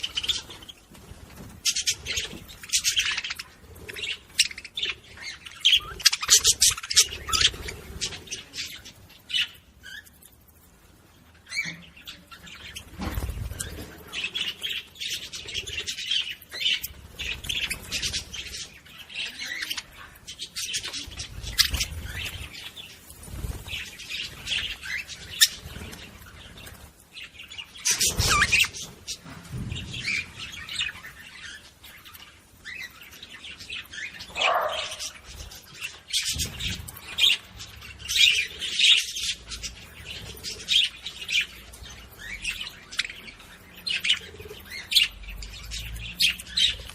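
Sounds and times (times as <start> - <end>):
budgerigars chirping: 34.0 - 35.2.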